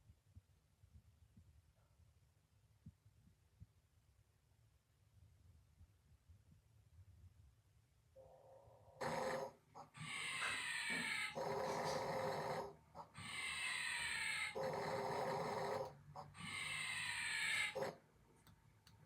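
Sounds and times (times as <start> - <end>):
loud snoring: 9.0 - 9.6, 11.3 - 12.8, 14.5 - 16.8.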